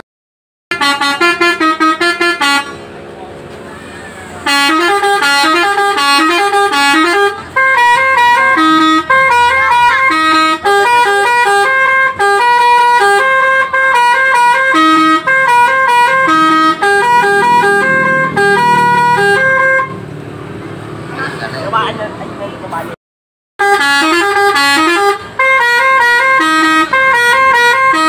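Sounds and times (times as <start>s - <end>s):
bus air horn melody: 0.7s - 3.0s, 3.6s - 20.1s, 23.6s - 28.0s.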